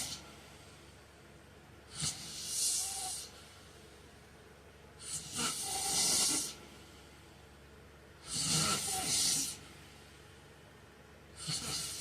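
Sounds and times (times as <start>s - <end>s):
man snoring: 1.9s - 3.4s, 5.0s - 6.6s, 8.2s - 9.6s, 11.4s - 12.0s.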